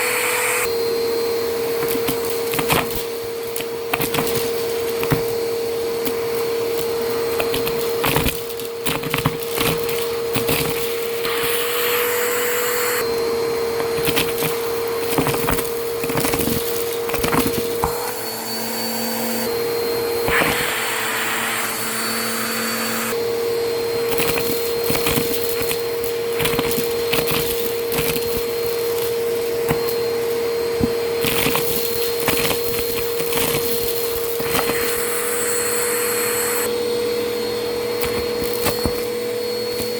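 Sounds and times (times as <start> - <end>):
vacuum cleaner running: 0.0 - 39.9
debris rattling through nozzle: 1.6 - 18.3, 24.0 - 36.6.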